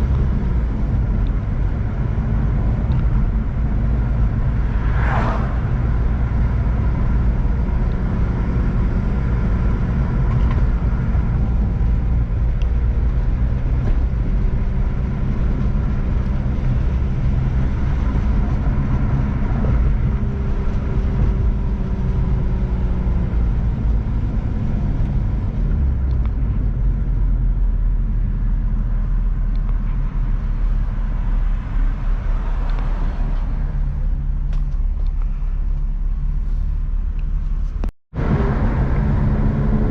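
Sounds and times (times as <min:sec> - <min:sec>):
car engine droning: 0:00.0 - 0:39.9
road noise: 0:00.0 - 0:39.9.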